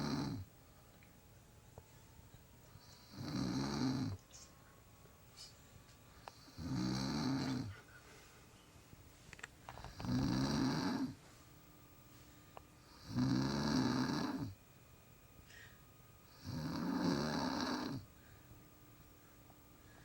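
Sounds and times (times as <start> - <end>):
woman snoring: 0.0 - 0.5, 2.8 - 4.2, 6.3 - 7.8, 9.8 - 11.2, 12.8 - 14.6, 16.2 - 18.1
quiet breathing: 1.8 - 14.6, 15.4 - 20.0.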